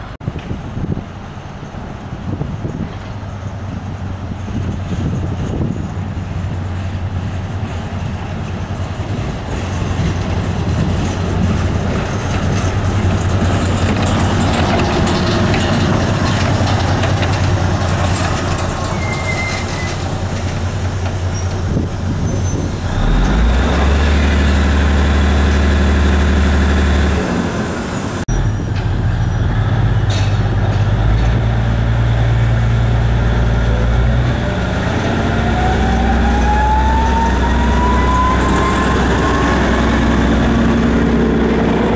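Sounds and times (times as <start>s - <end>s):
locomotive engine running: 1.2s - 41.9s
rising whine: 34.4s - 41.9s.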